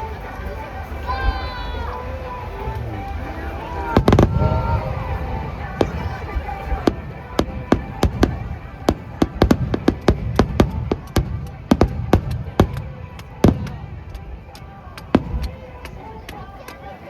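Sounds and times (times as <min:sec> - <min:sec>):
fireworks shells bursting: 0:03.9 - 0:16.5.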